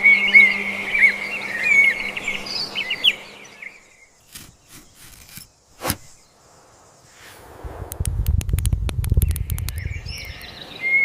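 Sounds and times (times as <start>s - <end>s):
small birds chirping: 0.0s - 7.3s, 8.6s - 11.0s
faint clicks: 7.9s - 10.5s.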